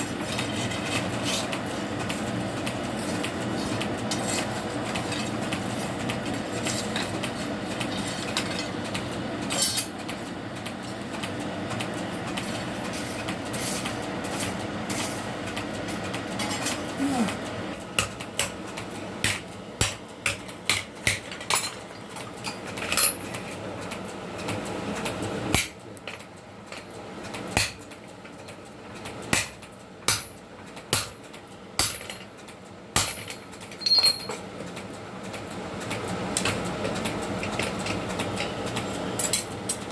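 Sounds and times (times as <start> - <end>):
hammer striking steel: 19.2 - 21.3, 29.4 - 30.4, 31.0 - 31.2, 31.8 - 32.2, 33.0 - 34.3.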